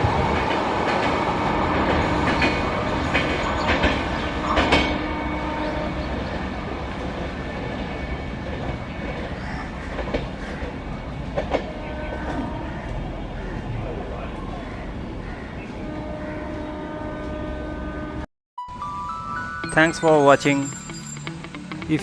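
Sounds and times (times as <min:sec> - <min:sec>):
rumble of train wheels on rail: 0:00.0 - 0:18.1
clacks over rail joints: 0:00.1 - 0:05.0, 0:08.5 - 0:13.0.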